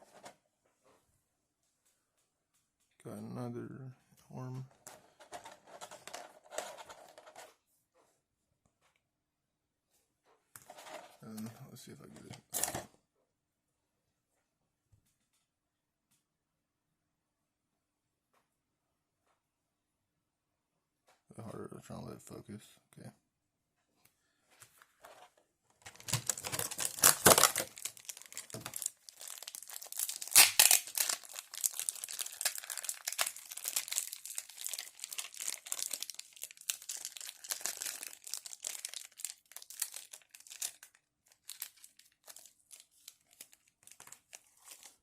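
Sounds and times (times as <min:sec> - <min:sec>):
plastic packaging crinkling: 0:25.8 - 0:45.0
plastic ripping: 0:25.9 - 0:45.0.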